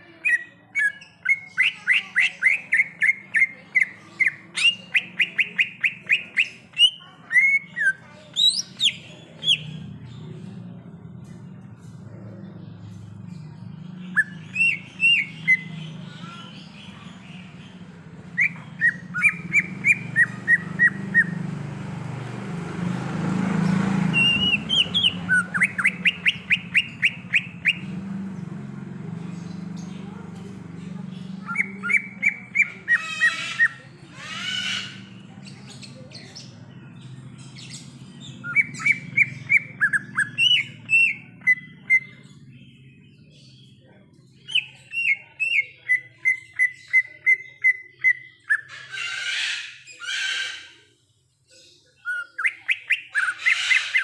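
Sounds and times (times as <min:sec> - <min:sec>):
bird chirping and whistling: 0:00.3 - 0:09.8, 0:14.0 - 0:17.5, 0:18.4 - 0:21.4, 0:24.1 - 0:28.0, 0:31.4 - 0:36.5, 0:37.4 - 0:43.6, 0:44.4 - 0:48.9, 0:52.0 - 0:54.0.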